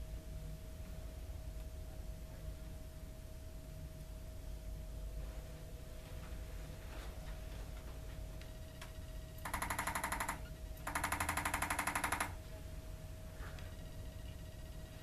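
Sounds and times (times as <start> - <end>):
rapid mechanical taps: 9.4 - 12.3.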